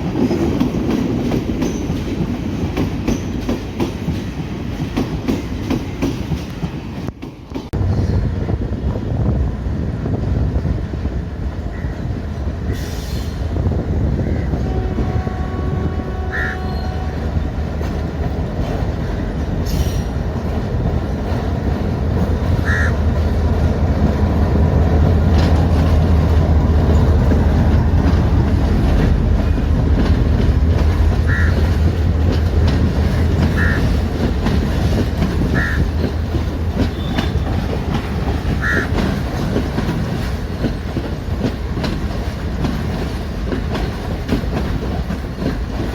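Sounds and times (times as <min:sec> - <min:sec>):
wheels clattering over rail joints: 0:00.0 - 0:07.8, 0:16.9 - 0:45.9
locomotive engine rumble: 0:07.7 - 0:45.9
wheel squeals: 0:36.8 - 0:37.7.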